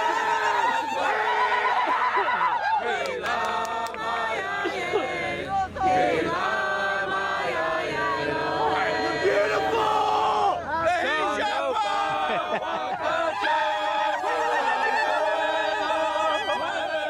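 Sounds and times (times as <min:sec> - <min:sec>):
crowd chanting and singing: 0:00.0 - 0:17.0
people talking: 0:00.0 - 0:17.0.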